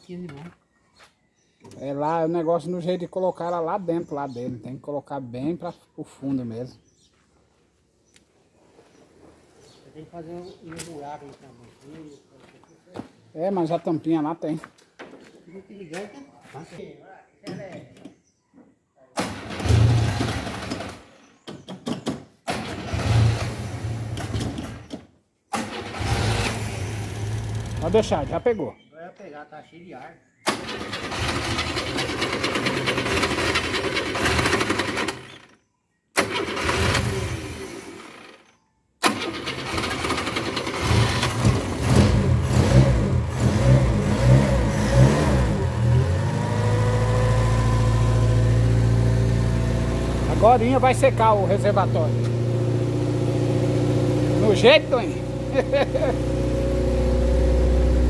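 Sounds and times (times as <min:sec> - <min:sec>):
car engine starting: 0:25.5 - 0:28.3, 0:36.2 - 0:38.2, 0:39.0 - 0:58.0.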